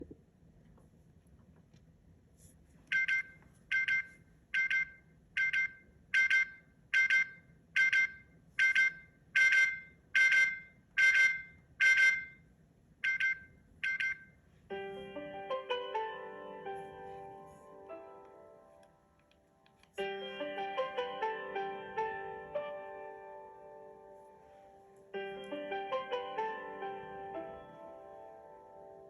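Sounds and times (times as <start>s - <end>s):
electronic double beep alarm: 2.9s - 12.4s, 13.0s - 14.4s.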